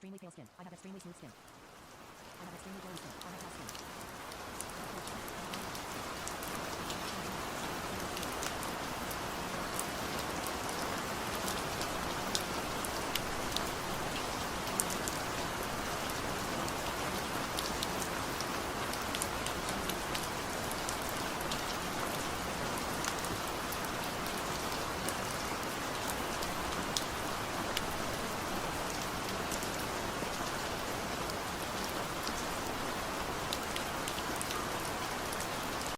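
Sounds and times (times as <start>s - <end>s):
raindrop ticks: 2.2s - 7.2s, 8.0s - 30.6s.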